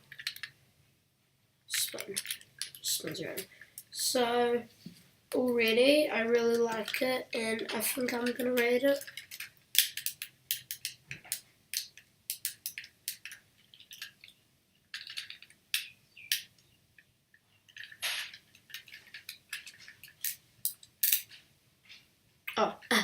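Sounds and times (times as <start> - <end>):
plastic fidget toy clicking: 7.6 - 13.4.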